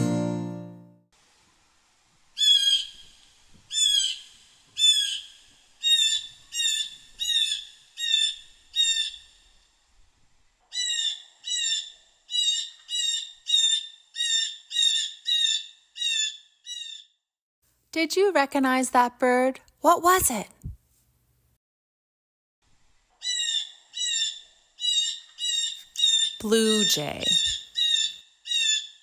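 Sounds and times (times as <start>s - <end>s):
blue jay harsh calls: 2.4s - 3.0s, 3.7s - 9.2s, 10.7s - 17.0s, 23.2s - 29.0s.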